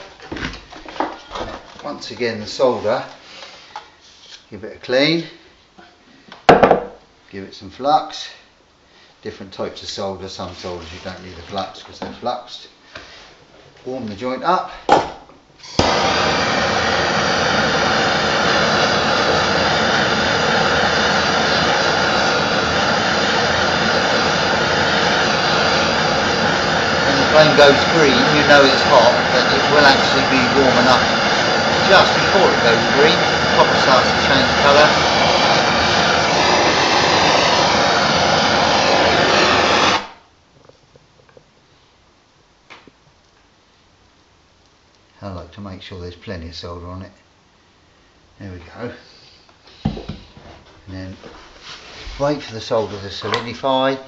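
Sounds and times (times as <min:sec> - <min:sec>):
blowtorch flame hissing: 0:15.6 - 0:40.3, 0:48.8 - 0:54.0.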